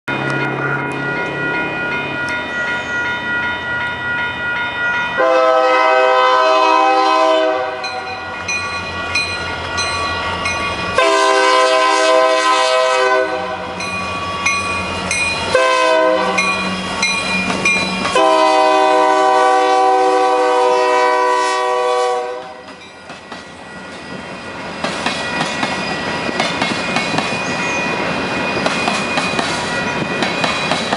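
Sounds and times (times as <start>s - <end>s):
train cars clattering: 0.1s - 30.9s
train air horn blasts: 5.2s - 8.2s, 11.0s - 13.8s, 15.5s - 16.5s, 18.1s - 22.7s.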